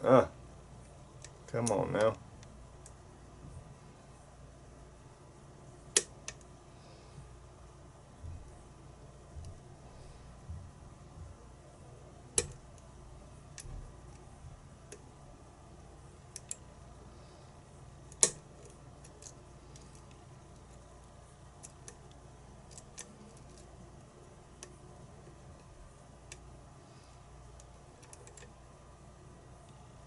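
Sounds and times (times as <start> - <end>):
lock picking metallic clicks: 18.1 - 20.7.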